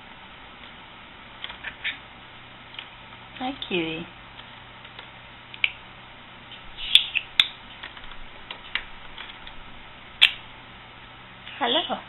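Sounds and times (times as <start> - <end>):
budgie clicks: 4.4 - 5.8, 6.8 - 9.6
budgie chirping: 6.7 - 7.6, 10.2 - 10.5.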